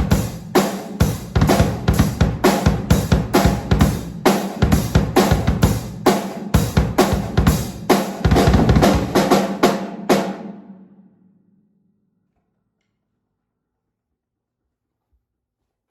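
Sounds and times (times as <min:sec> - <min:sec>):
drum and cymbal hits: 0:00.0 - 0:10.6.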